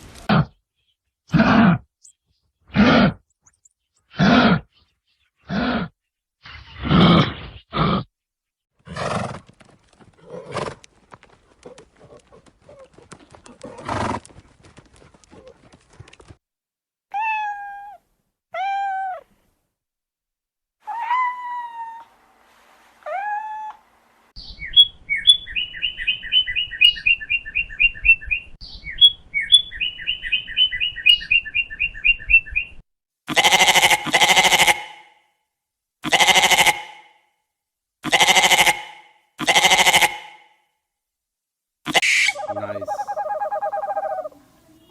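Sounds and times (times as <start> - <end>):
loud bleats: 33.3 - 35.1, 36.0 - 37.1, 38.0 - 40.5.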